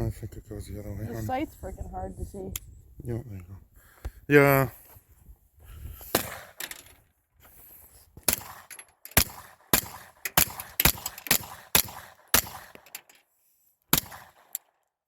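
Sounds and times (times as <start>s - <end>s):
rifle gunshots: 6.1s - 6.6s, 8.3s - 12.9s, 13.9s - 14.6s.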